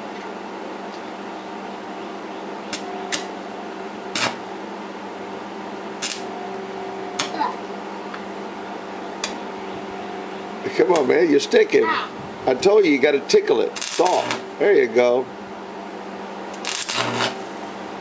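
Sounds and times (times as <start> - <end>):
welding machine humming: 2.5 - 18.0
welding arc crackles: 2.7 - 3.3, 4.1 - 4.4, 6.0 - 6.4, 13.6 - 14.5, 16.5 - 17.6.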